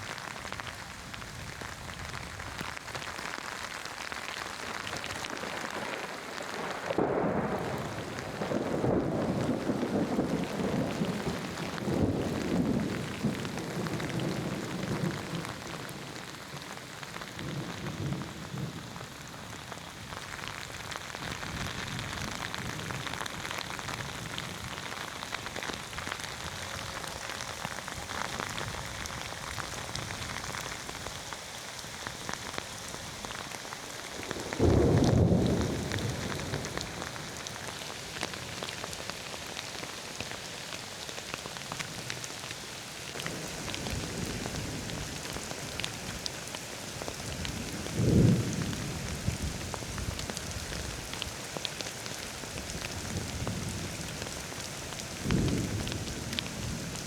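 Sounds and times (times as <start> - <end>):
rain spattering on surfaces: 0.0 - 57.0
thunder rumbling: 6.9 - 16.1, 34.2 - 38.7, 47.1 - 50.8, 55.2 - 57.0.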